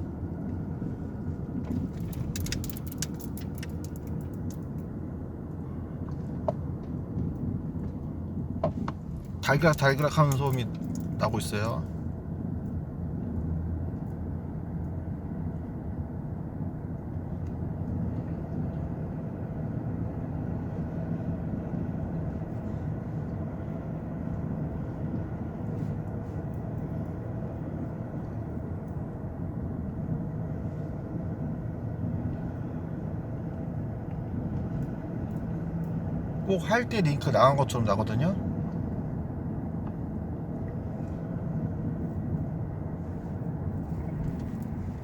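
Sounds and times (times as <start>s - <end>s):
road and tyre rumble: 0.0s - 45.0s
suspension rattle: 1.2s - 5.0s, 6.4s - 12.0s, 42.0s - 45.0s.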